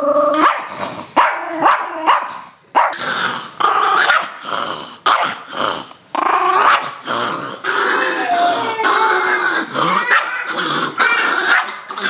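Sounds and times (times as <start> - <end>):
small dog snarling barks: 0.3 - 3.3, 3.9 - 5.6, 6.4 - 8.2, 9.5 - 12.0
small dog growling: 2.9 - 12.0.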